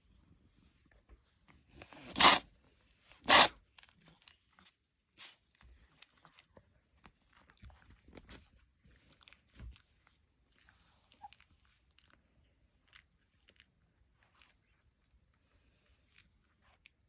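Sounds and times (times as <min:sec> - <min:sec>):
cat sneezing: 0:01.8 - 0:02.4, 0:03.2 - 0:03.6.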